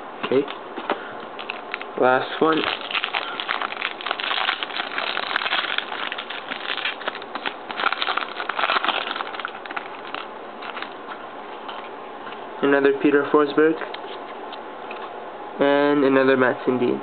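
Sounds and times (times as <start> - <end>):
wrapper tearing and crinkling: 1.4 - 11.2.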